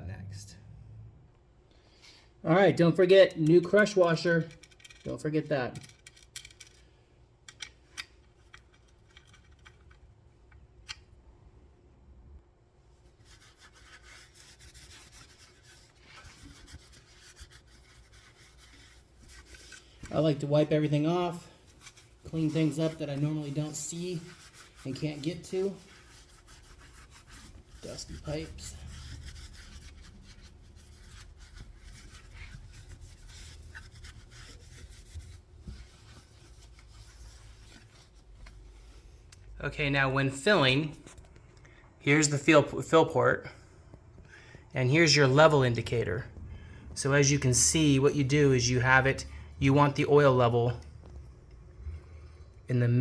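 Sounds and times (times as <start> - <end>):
cloth rag rubbing metal: 13.2 - 38.8.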